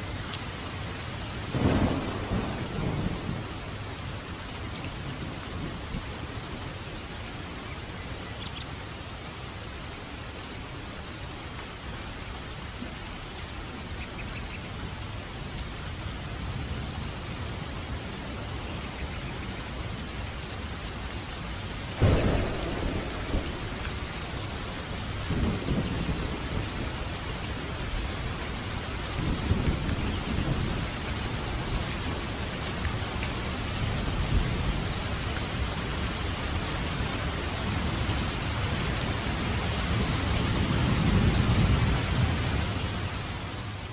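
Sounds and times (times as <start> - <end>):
steady rain falling: 0.0 - 43.9
thunder clap and rumbles: 1.5 - 6.6, 22.0 - 36.9, 37.6 - 42.9.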